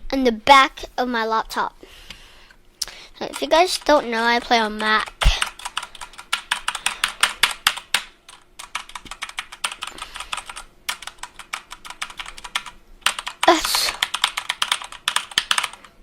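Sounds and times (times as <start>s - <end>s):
mechanical keyboard typing: 3.3s - 16.0s.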